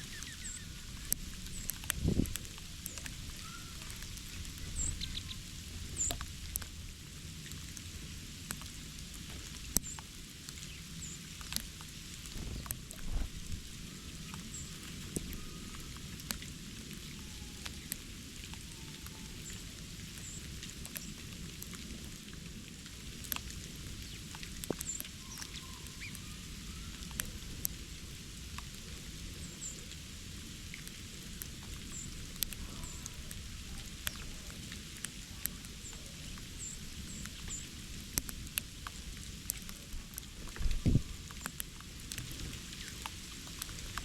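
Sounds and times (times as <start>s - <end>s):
small birds chirping: 0.0s - 6.6s, 23.9s - 27.6s, 31.3s - 37.8s
light ticks and taps: 6.0s - 6.7s, 7.4s - 13.2s, 23.2s - 23.6s, 24.3s - 26.2s, 37.1s - 40.7s.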